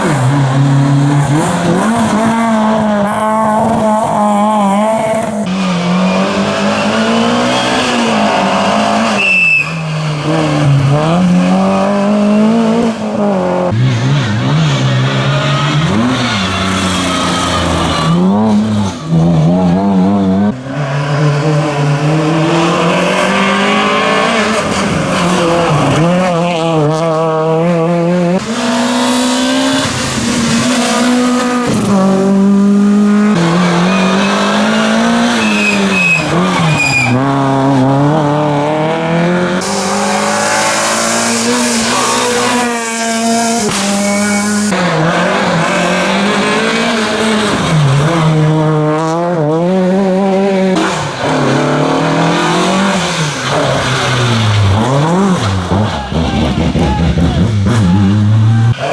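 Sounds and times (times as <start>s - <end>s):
rally car engine revving: 0.0s - 58.9s
tyre squeal: 9.0s - 10.0s, 33.4s - 37.4s, 41.4s - 44.8s.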